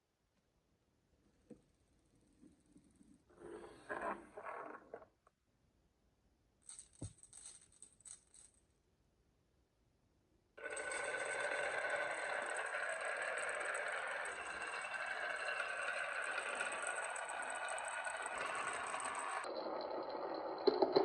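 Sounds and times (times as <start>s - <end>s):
marbles clicking on a track: 10.6s - 21.0s
marbles rattling along a track: 10.6s - 21.0s.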